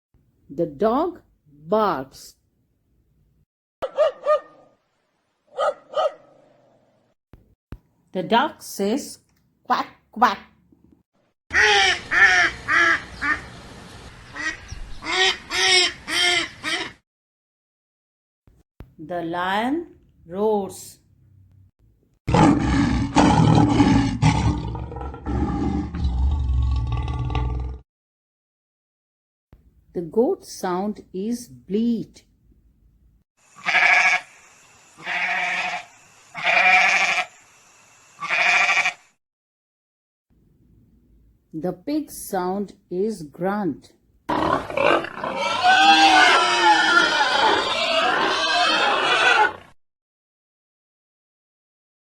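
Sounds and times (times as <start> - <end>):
duck quacking: 11.5 - 13.5, 14.3 - 17.0
goat bleating: 33.6 - 34.3, 35.0 - 37.3, 38.2 - 39.0, 45.3 - 49.6.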